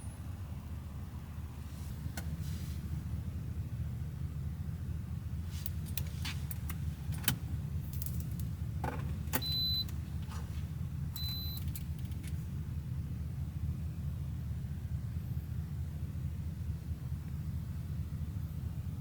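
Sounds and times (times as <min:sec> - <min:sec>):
short electronic beeps: 0:09.4 - 0:09.9, 0:11.2 - 0:11.7.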